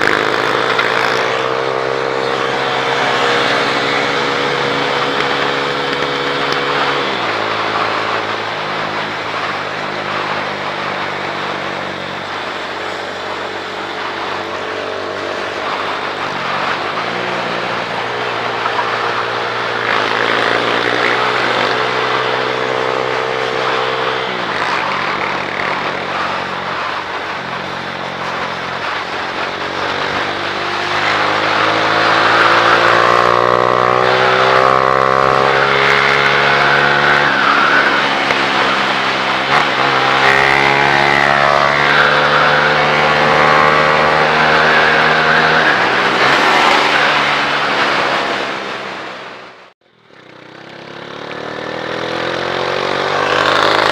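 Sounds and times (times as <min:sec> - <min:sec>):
motorcycle engine accelerating: 0:00.0 - 0:53.9.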